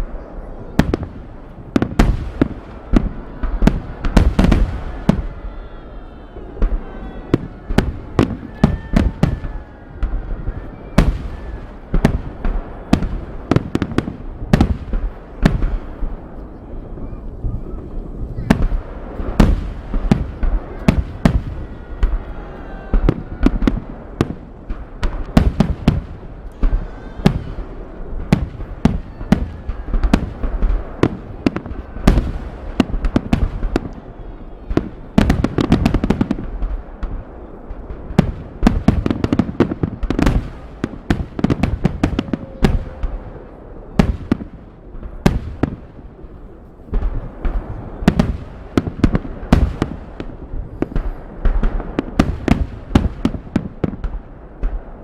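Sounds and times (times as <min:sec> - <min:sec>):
deep fireworks booms: 0:00.0 - 0:55.0
fireworks bursts and crackling: 0:00.0 - 0:55.0.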